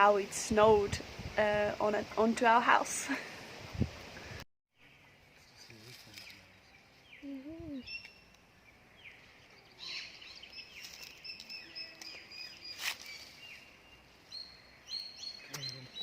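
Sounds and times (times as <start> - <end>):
birds chirping and whistling: 4.8 - 16.0.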